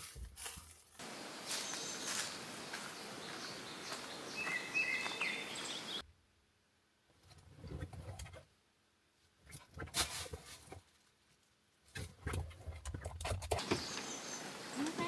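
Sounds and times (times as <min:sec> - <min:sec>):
birds chirping: 0:01.0 - 0:06.0, 0:13.6 - 0:15.0
short high bird calls: 0:01.0 - 0:06.0, 0:13.6 - 0:15.0.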